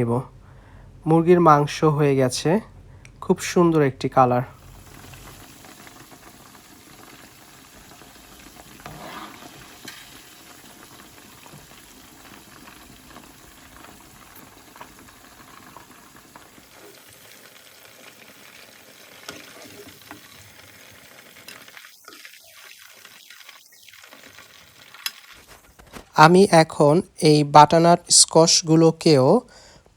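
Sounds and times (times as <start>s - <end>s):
chicken sizzling in hot oil: 4.6s - 25.6s.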